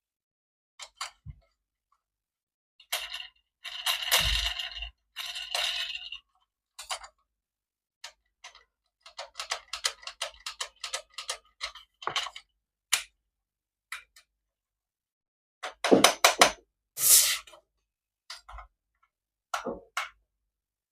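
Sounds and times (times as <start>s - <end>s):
rapid small clicks: 8.1s - 13.1s.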